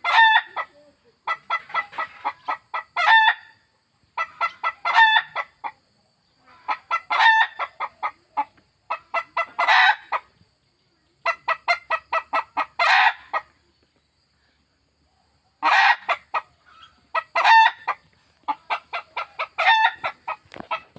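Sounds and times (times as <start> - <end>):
hen cackling: 0.0 - 3.6, 4.2 - 5.8, 6.5 - 10.3, 11.2 - 13.6, 15.6 - 20.9.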